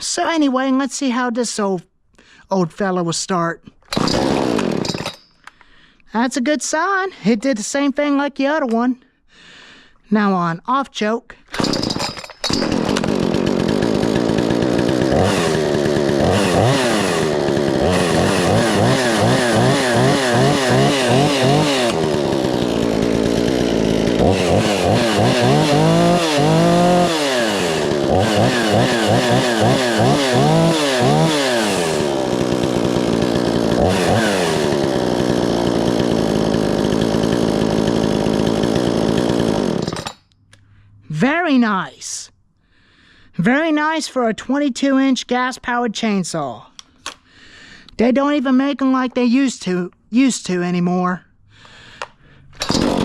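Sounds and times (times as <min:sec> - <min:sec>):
chainsaw engine revving: 0:03.9 - 0:05.2, 0:11.5 - 0:40.2, 0:52.6 - 0:53.0.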